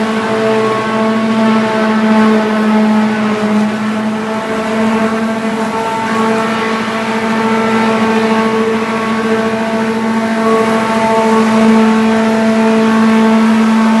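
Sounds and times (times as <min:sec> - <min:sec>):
wood grinder humming: 0:00.0 - 0:14.0.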